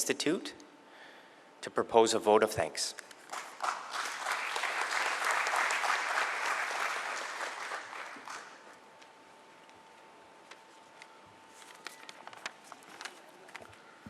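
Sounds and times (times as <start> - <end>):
audience applauding: 3.3 - 8.7.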